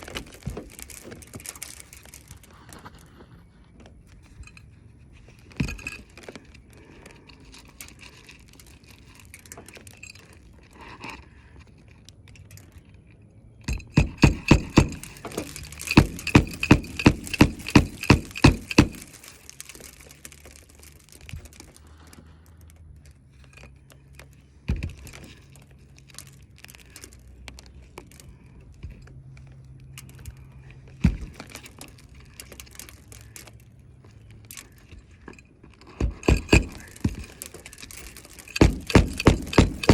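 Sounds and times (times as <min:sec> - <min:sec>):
hammer driving nails: 0:13.7 - 0:19.8, 0:35.8 - 0:39.9.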